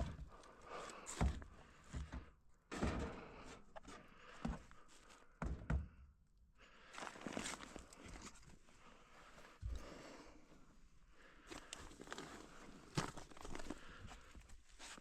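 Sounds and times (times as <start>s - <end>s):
soft knocks and thuds: 5.4s - 6.0s.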